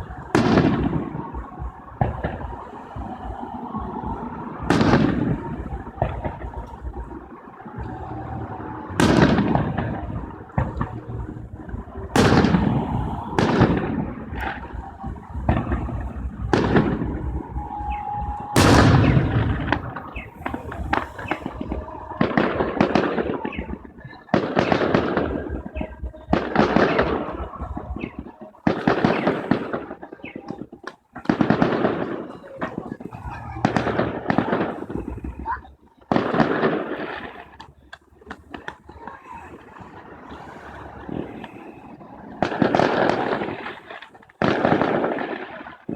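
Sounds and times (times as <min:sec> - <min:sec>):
fireworks crackling: 0:00.0 - 0:45.9.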